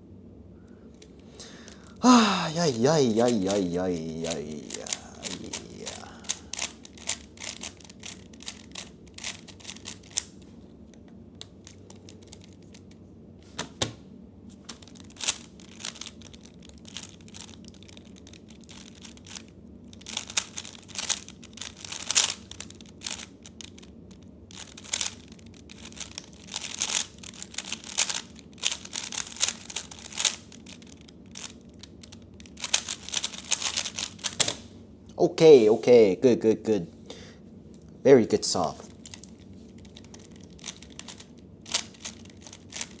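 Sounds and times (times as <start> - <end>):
puzzle cube clicking and rattling: 2.5 - 10.4, 11.6 - 12.8, 14.7 - 23.9, 24.5 - 34.6, 38.9 - 43.0.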